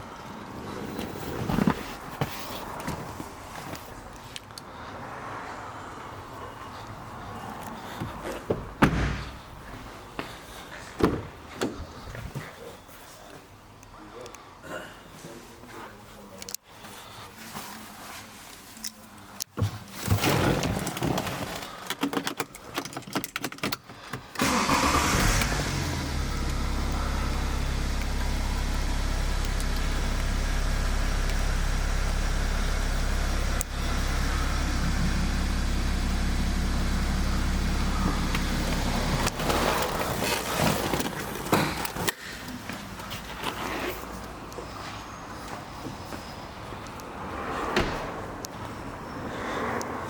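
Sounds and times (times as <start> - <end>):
handling noises: 0.8 - 4.8, 6.0 - 13.6, 16.4 - 24.4, 37.9 - 48.8
car engine starting and idling: 24.3 - 42.7.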